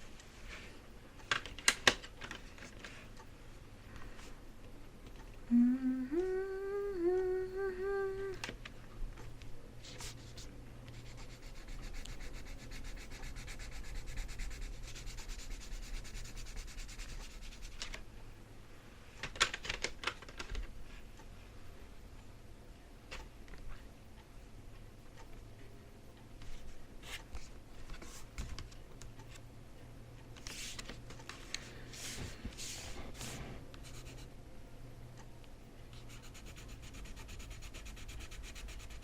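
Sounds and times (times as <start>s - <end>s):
person humming: 5.4s - 8.5s
pencil scribbling on paper: 11.0s - 17.8s, 36.0s - 39.0s.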